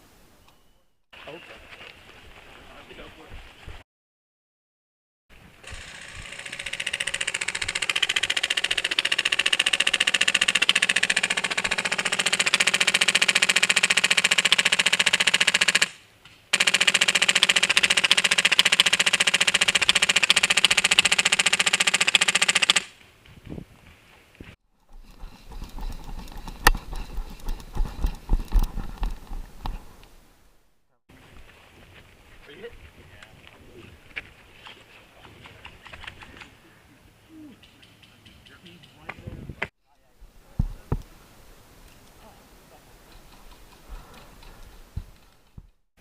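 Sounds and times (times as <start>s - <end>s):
airsoft gun rapid firing: 5.6s - 22.9s
rustling: 22.9s - 30.5s.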